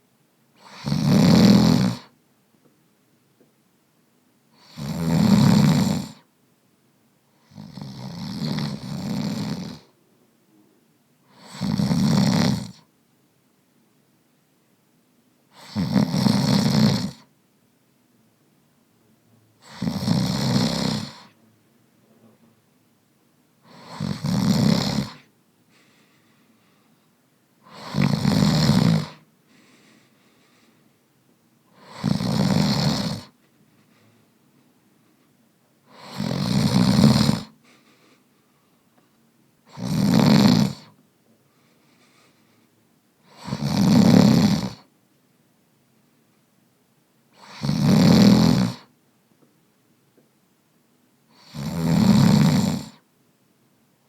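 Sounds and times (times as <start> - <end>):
man snoring: 0.6 - 2.1, 4.6 - 6.2, 7.4 - 10.0, 11.3 - 12.8, 15.5 - 17.2, 19.6 - 21.4, 23.6 - 25.2, 27.6 - 29.2, 31.7 - 33.4, 35.9 - 37.6, 39.7 - 41.0, 43.2 - 44.9, 47.4 - 48.9, 51.3 - 53.0.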